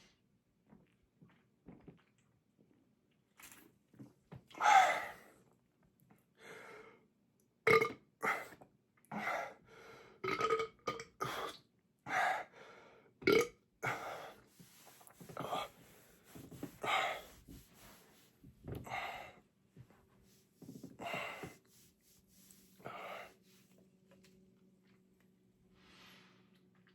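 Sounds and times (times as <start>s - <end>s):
breaths: 4.6s - 5.4s, 6.3s - 7.1s, 8.2s - 10.2s, 11.2s - 13.2s, 13.8s - 18.2s, 18.8s - 19.5s, 20.9s - 21.8s, 22.4s - 23.7s
man belching: 7.7s - 8.0s.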